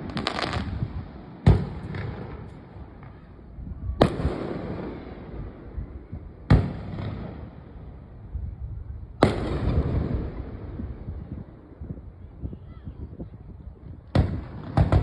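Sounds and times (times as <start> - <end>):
firework shells booming: 0.0 - 3.4, 4.0 - 8.0, 9.2 - 11.4, 14.0 - 15.0
rolling echo: 0.0 - 8.1, 9.2 - 11.8.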